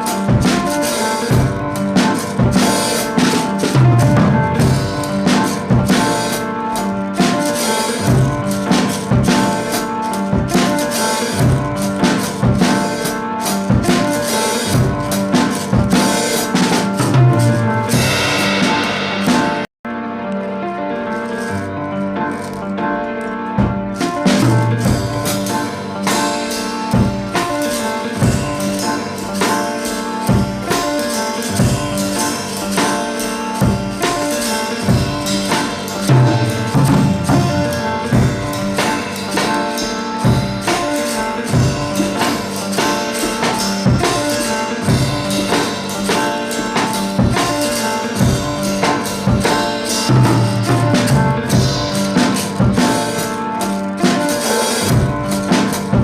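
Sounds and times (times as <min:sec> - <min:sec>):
instrumental music with drums: 0:00.0 - 0:20.0, 0:20.6 - 0:56.0.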